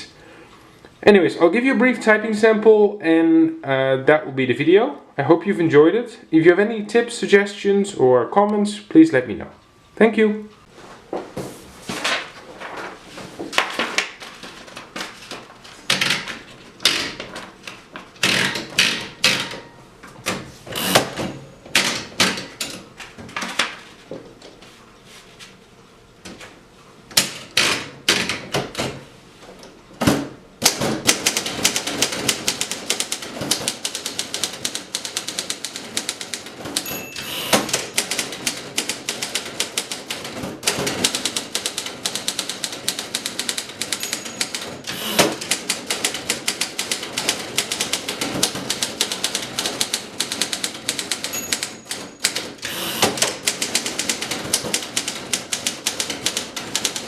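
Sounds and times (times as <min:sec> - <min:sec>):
typewriter carriage return: 0:13.5 - 0:24.0, 0:30.1 - 0:57.0
typewriter bell ring: 0:19.1 - 0:19.8, 0:20.8 - 0:22.2, 0:36.8 - 0:38.2, 0:43.9 - 0:45.7, 0:51.2 - 0:53.5
typewriter keys clicking: 0:30.6 - 0:57.0.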